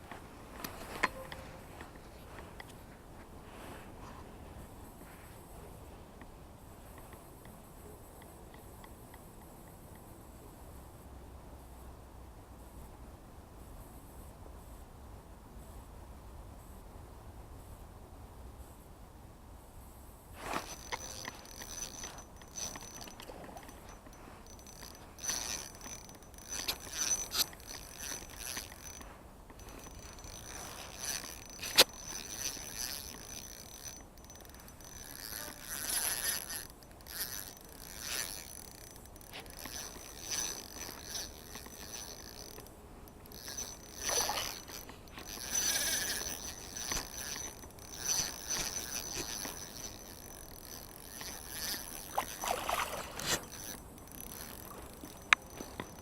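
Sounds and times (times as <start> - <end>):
small gear clicking and clinking: 0.0 - 2.8, 20.4 - 56.0.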